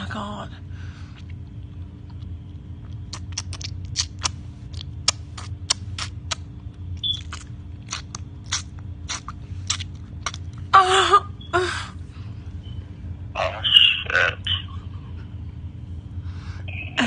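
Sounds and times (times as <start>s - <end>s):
low steady hum: 0.0s - 17.0s
wet clicking and squelching: 1.2s - 10.6s.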